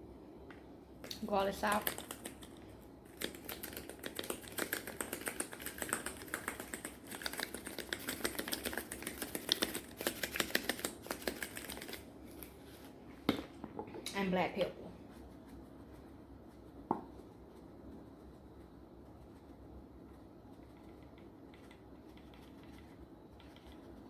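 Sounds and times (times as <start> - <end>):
salt shaker rattling: 1.5 - 12.1.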